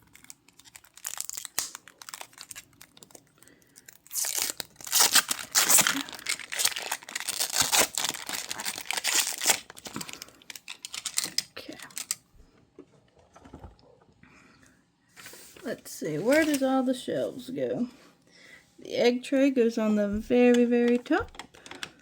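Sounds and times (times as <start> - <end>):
plastic packaging crinkling: 0.0 - 12.2.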